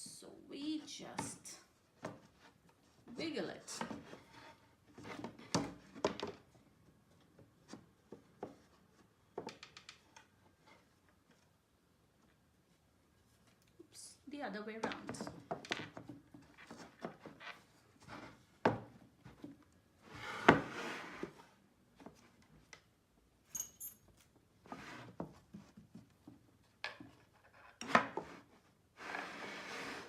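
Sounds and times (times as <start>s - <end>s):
boards scraping and rubbing: 20.0s - 21.4s, 27.4s - 30.0s.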